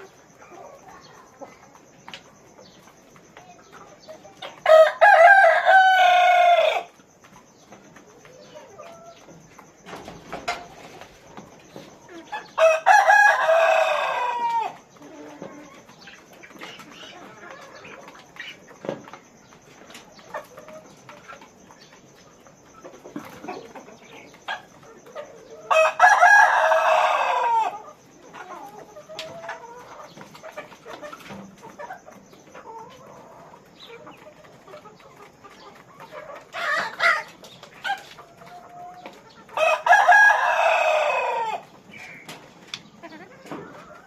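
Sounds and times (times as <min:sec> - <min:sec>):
chickens clucking: 0:00.0 - 0:44.0
rooster crowing: 0:04.6 - 0:06.9, 0:12.5 - 0:14.8, 0:25.7 - 0:27.8, 0:39.6 - 0:41.6.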